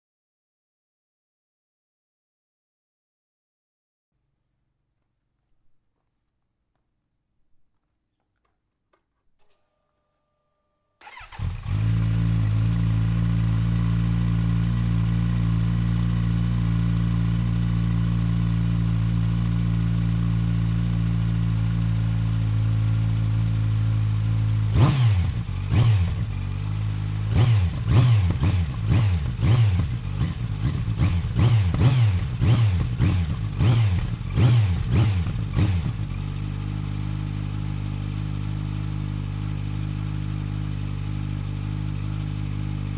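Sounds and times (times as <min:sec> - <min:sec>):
motorcycle engine idling: 0:11.0 - 0:42.9
motorcycle engine revving: 0:11.0 - 0:42.9.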